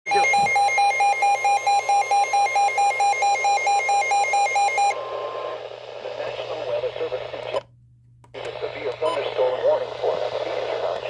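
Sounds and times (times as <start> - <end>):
rapid alert alarm beeps: 0.1 - 5.4
steady warning tone: 0.1 - 5.5
radio hiss: 5.0 - 7.6, 8.4 - 11.0.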